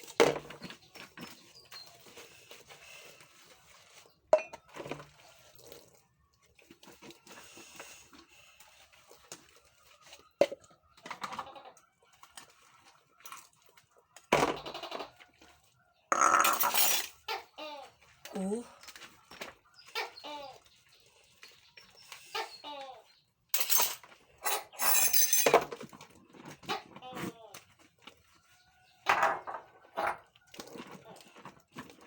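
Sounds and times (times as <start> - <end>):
dishes and cutlery clattering: 16.2 - 17.3, 23.6 - 26.0.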